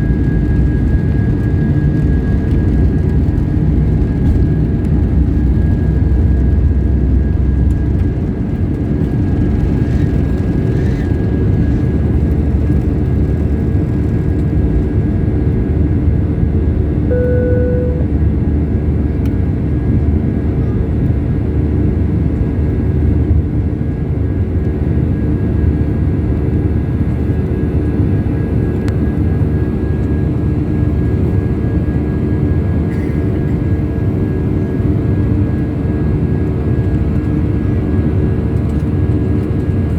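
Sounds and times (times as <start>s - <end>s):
airliner cabin engine roar: 0.0s - 39.9s
single cabin tone: 17.1s - 18.4s.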